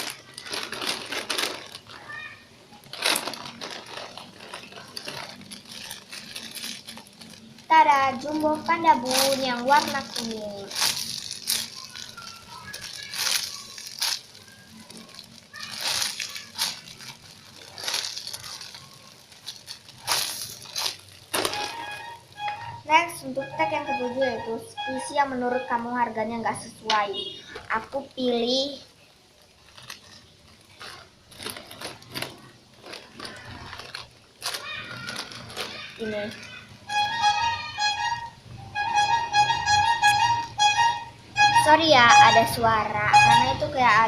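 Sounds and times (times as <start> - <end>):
packaging rustling: 0.0 - 22.8, 27.3 - 36.8
brief high-pitched tone: 21.5 - 25.8.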